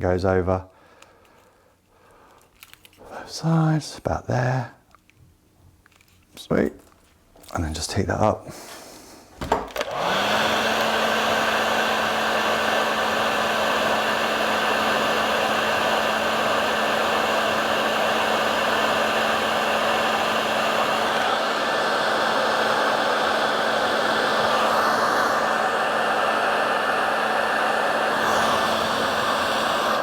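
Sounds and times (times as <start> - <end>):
heat gun motor hum: 9.6 - 30.0
heat gun air rushing: 9.8 - 30.0.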